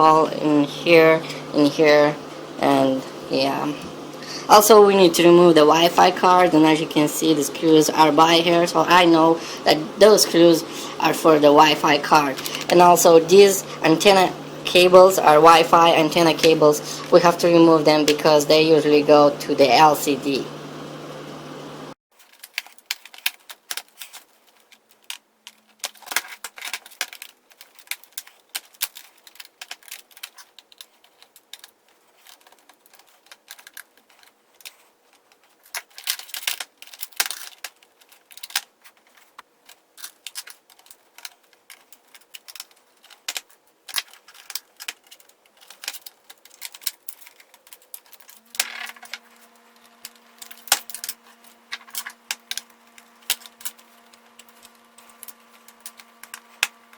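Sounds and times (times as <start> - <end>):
faint steady hum: 0.0 - 22.0, 22.6 - 56.9
plastic and metal parts handled: 22.1 - 56.9.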